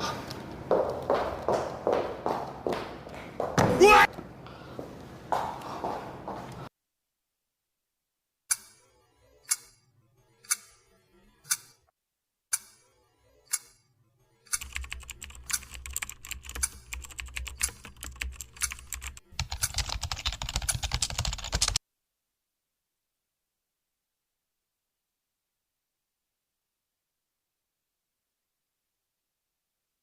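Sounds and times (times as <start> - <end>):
rapid clicking like typing: 14.5 - 21.8.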